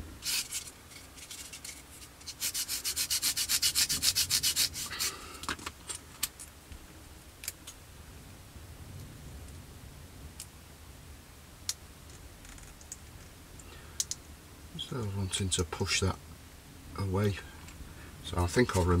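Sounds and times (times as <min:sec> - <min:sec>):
sanding stick on plastic: 0:00.2 - 0:05.1.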